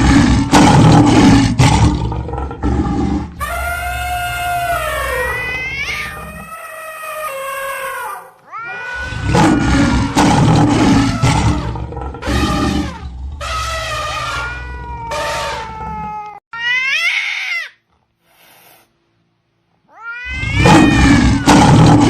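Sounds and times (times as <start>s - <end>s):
loud roaring with deep rumble: 0.0s - 3.4s, 9.1s - 15.6s, 20.5s - 22.0s
cat meowing: 3.4s - 9.2s, 19.9s - 21.5s.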